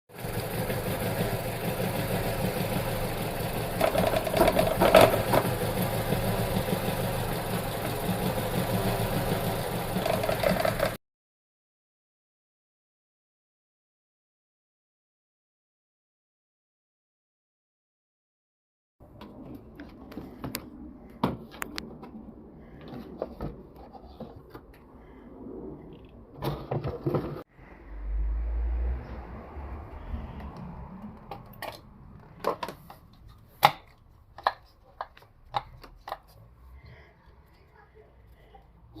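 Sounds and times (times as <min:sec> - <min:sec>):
engine idling roughly with misfire: 0:00.1 - 0:11.0
loud low rumble: 0:27.5 - 0:31.2
clicks and knocks of parts: 0:30.4 - 0:36.4.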